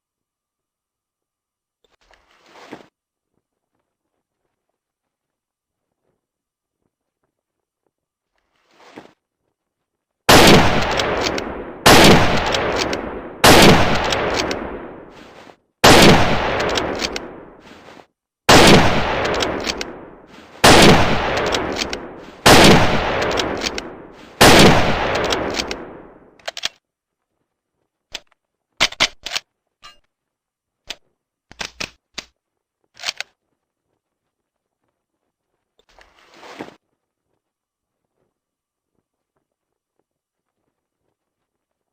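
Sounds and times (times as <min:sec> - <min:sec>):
rifle shots with echo: 0:10.3 - 0:15.2, 0:15.8 - 0:17.6, 0:18.5 - 0:26.2.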